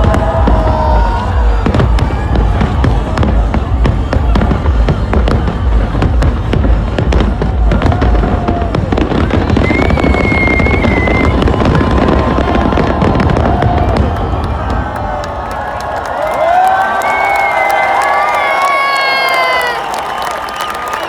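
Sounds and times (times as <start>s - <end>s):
fireworks cracks and bangs: 0.0s - 21.0s
firework whistle: 7.7s - 14.8s.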